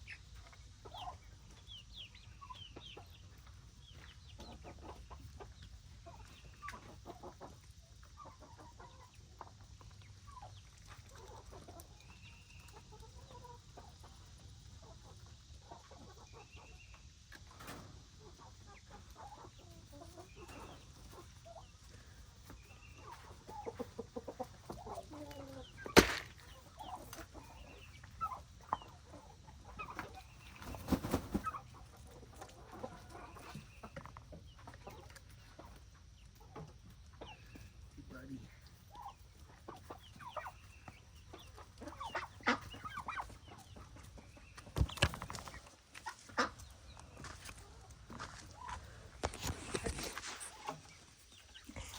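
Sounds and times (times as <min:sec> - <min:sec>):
chickens clucking: 0:00.0 - 0:51.9
sharp knock: 0:26.0 - 0:26.4.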